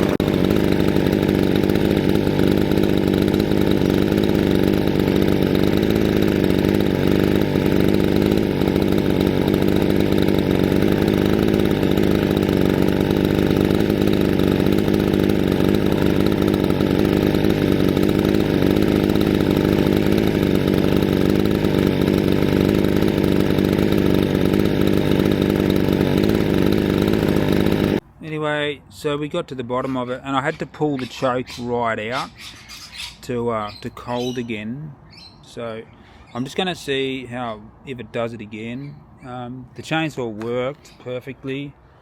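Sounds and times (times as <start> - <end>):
chainsaw engine running: 0.0 - 28.0, 29.8 - 41.8.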